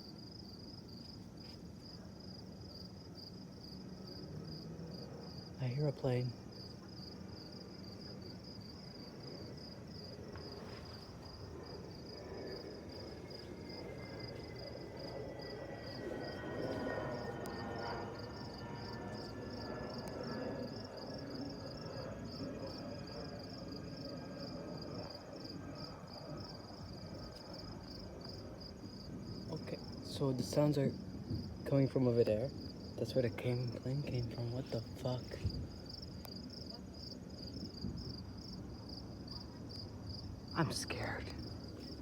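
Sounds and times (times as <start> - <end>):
crickets chirping: 0.0 - 42.0
distant aircraft rumble: 6.3 - 36.6.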